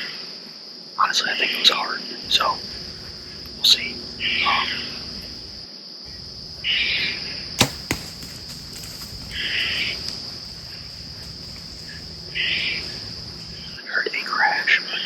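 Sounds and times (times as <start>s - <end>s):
crickets chirping: 2.2s - 13.8s.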